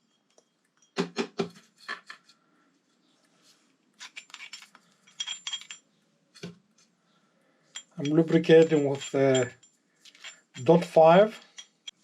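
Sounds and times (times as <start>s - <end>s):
small metal parts clinking: 4.0s - 6.5s, 7.7s - 12.0s.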